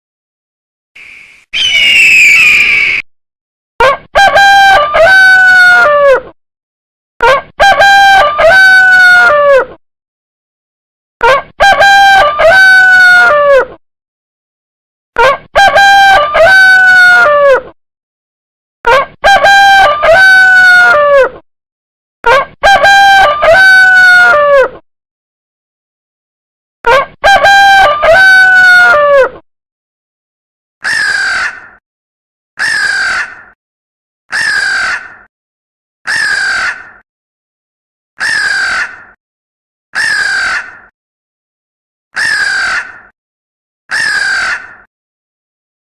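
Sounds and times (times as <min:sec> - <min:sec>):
rooster crowing: 0:04.2 - 0:06.0, 0:07.6 - 0:09.6, 0:11.6 - 0:13.4, 0:15.6 - 0:17.4, 0:19.2 - 0:21.2, 0:22.6 - 0:24.6, 0:27.2 - 0:29.2.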